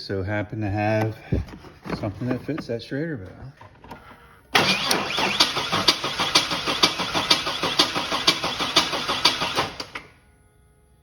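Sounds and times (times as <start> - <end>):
engine cranking on starter: 4.5 - 10.2.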